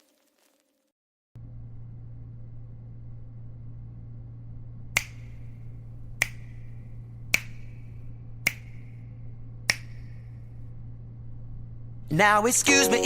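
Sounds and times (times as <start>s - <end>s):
low steady hum: 1.4s - 13.0s
sharp snaps with ringing tail: 4.9s - 5.6s, 6.2s - 9.1s.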